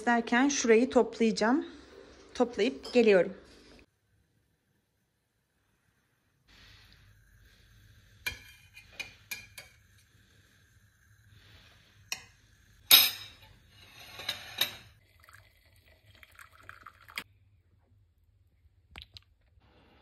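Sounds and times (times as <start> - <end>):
dishes and cutlery clinking: 12.1 - 15.0.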